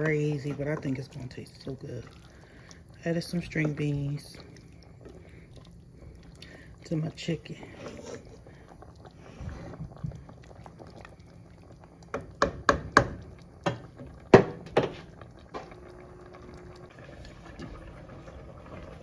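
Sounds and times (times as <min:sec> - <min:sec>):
pot of broth simmering: 0:00.0 - 0:19.0
sharp knocks against cooking pot: 0:12.2 - 0:15.0.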